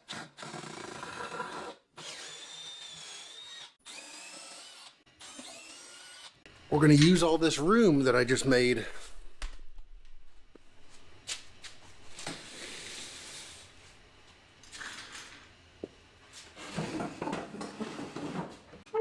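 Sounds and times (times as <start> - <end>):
objects scraping and rustling: 10.8 - 15.6, 16.2 - 18.8.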